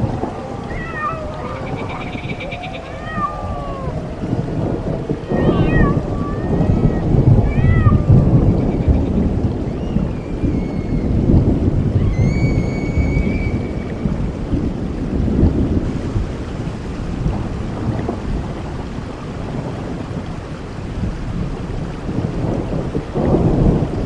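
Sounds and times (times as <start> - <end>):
high wavering calls: 0.0 - 6.9
rain: 0.0 - 24.0
rolling thunder: 0.0 - 24.0.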